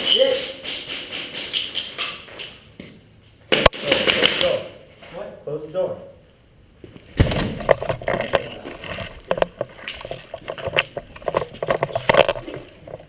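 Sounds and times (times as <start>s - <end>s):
sharp knocks and clatter: 0.0s - 4.6s, 7.1s - 13.0s.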